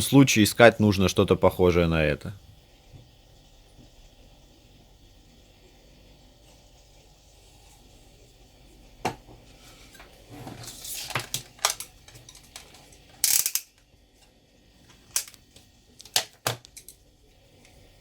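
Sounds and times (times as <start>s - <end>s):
small tools clicking and tapping: 11.1s - 13.9s, 15.1s - 15.4s, 16.0s - 17.0s.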